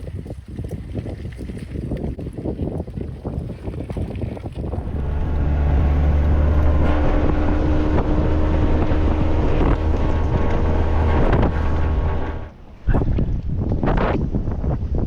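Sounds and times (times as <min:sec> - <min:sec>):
wind buffeting microphone: 0:00.0 - 0:15.0
engine humming: 0:04.8 - 0:14.4.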